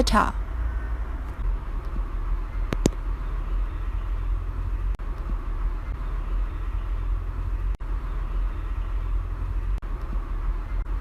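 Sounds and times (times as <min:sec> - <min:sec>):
low rumble with hiss: 0:00.0 - 0:11.0.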